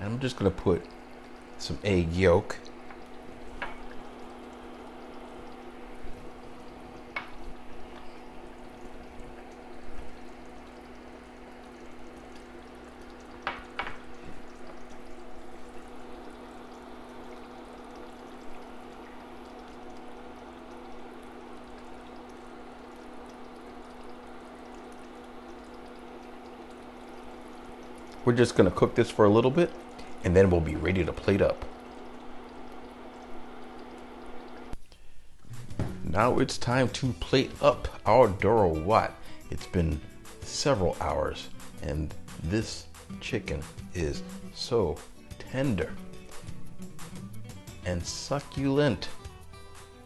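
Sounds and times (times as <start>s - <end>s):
stew simmering in a pot: 0.0s - 39.4s
steady low hum: 0.0s - 46.6s.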